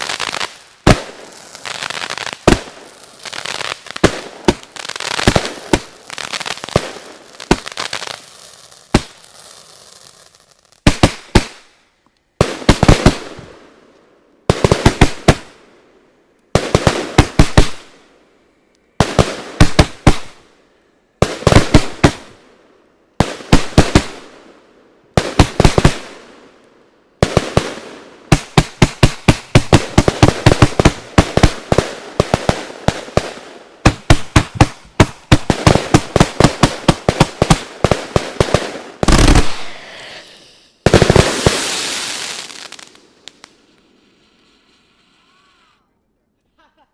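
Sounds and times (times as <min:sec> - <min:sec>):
fireworks battery firing: 0:00.0 - 0:11.7, 0:33.8 - 0:40.0.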